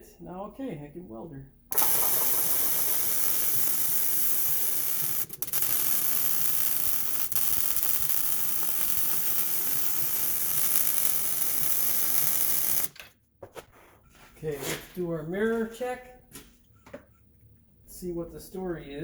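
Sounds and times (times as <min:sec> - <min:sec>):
welder arc crackling: 0:01.7 - 0:13.0.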